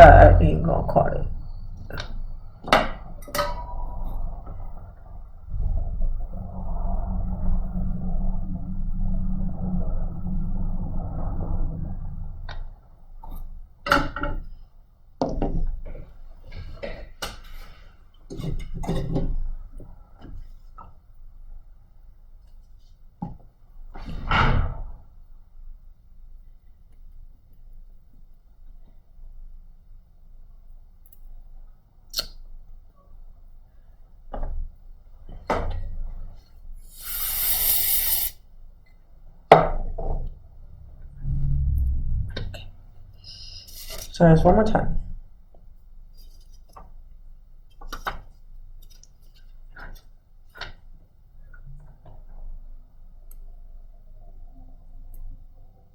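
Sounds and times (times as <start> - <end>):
air blowing hiss: 36.8 - 38.4.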